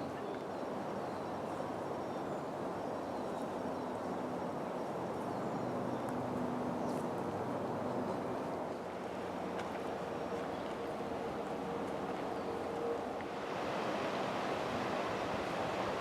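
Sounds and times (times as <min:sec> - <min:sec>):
mountain creek rushing: 0:08.7 - 0:16.0.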